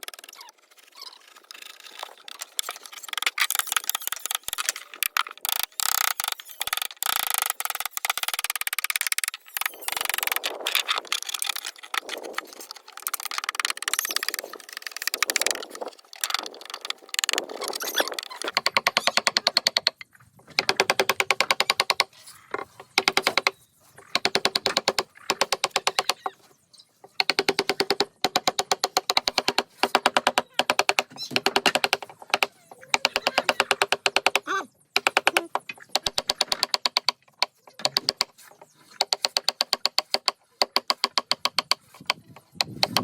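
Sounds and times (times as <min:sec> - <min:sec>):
chisel scraping wood: 0:01.4 - 0:43.0
fast taps on chisel: 0:18.4 - 0:26.2, 0:27.1 - 0:43.0.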